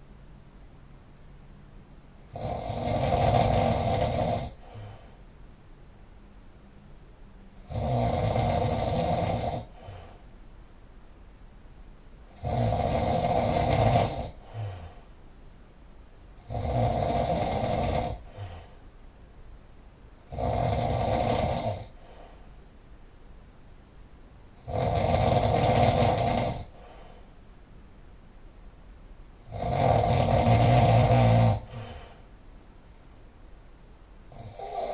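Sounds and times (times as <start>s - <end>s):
quiet breathing: 2.2s - 5.5s, 7.4s - 10.6s, 12.2s - 15.4s, 16.4s - 19.2s, 20.1s - 22.9s, 24.6s - 27.6s, 29.4s - 33.3s
person snoring loudly: 2.3s - 5.1s, 7.6s - 10.2s, 12.3s - 15.0s, 16.4s - 18.7s, 20.2s - 22.0s, 24.6s - 27.0s, 29.4s - 32.2s, 34.3s - 34.9s.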